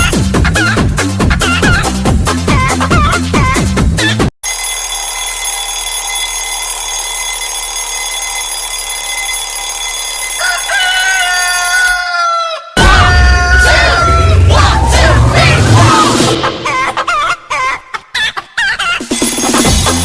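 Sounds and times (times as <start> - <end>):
steady electronic alarm tone: 4.4 - 12.0
rooster crow alarm tone: 4.5 - 15.2.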